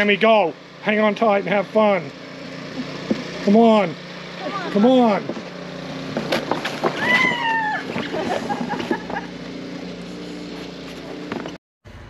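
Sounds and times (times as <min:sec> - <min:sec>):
low engine-like hum: 0:00.0 - 0:12.0
person crying out: 0:07.0 - 0:08.0.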